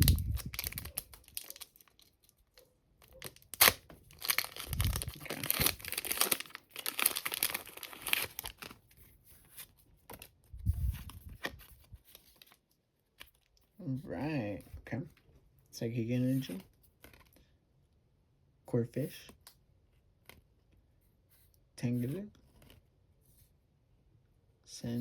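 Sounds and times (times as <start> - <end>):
foil wrapper tearing and crinkling: 0.0 - 2.4, 3.2 - 8.8.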